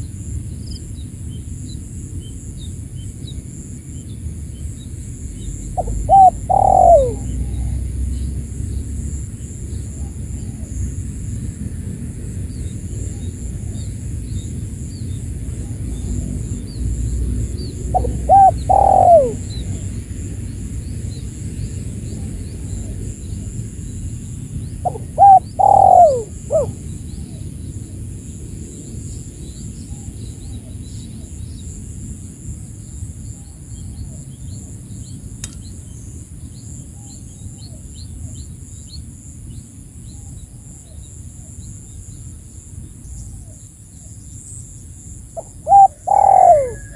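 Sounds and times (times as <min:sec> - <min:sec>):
dove cooing: 0:05.8 - 0:07.9, 0:17.8 - 0:19.8, 0:24.8 - 0:26.8, 0:45.4 - 0:46.9.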